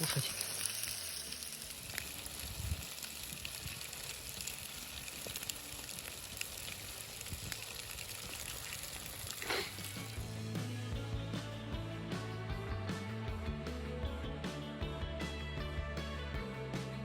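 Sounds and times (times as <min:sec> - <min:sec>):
faint crackles: 0:00.0 - 0:10.2
fish sizzling in butter: 0:00.0 - 0:10.2.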